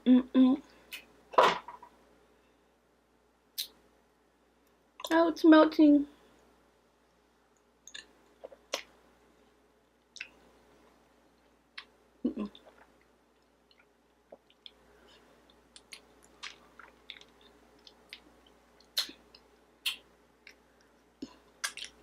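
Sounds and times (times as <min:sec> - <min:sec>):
chewing with wet smacks: 0:15.5 - 0:20.6.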